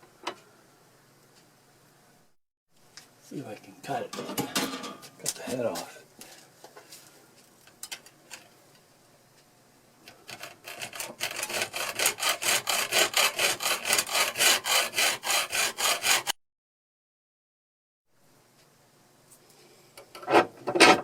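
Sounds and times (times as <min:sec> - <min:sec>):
hand saw cutting metal: 0:10.3 - 0:16.4.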